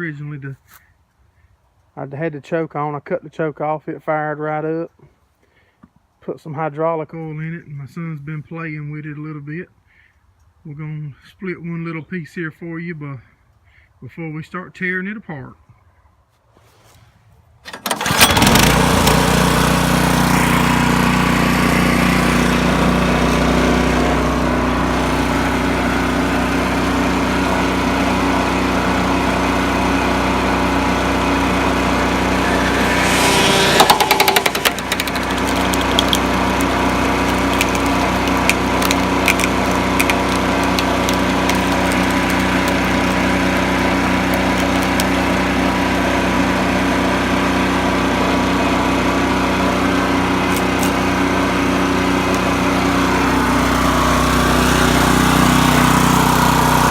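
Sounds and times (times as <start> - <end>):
small gasoline engine running: 17.8 - 56.9
sharp cracks: 32.8 - 45.3.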